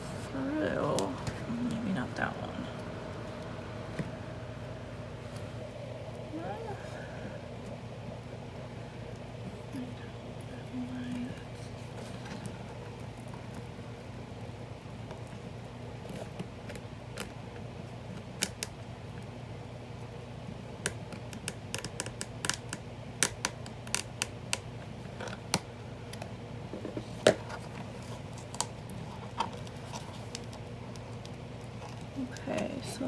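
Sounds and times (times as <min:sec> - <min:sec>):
faint steady low hum: 0:00.0 - 0:33.0.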